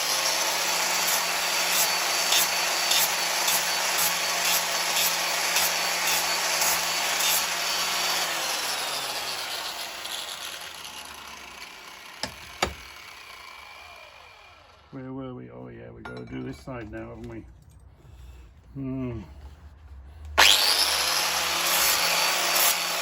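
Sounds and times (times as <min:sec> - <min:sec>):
grinder rasping on steel: 0:00.0 - 0:14.9, 0:20.4 - 0:23.0
motor winding down: 0:11.0 - 0:15.0, 0:20.4 - 0:23.0.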